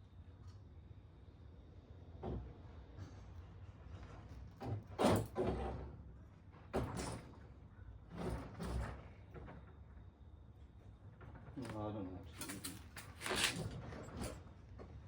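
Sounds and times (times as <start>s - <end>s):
scraping and knocking on bicycle: 11.3s - 14.4s.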